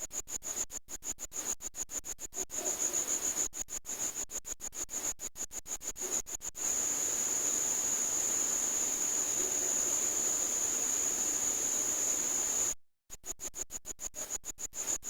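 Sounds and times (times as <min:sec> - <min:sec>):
high-pitched insect trill: 0:02.4 - 0:04.2, 0:06.0 - 0:12.8.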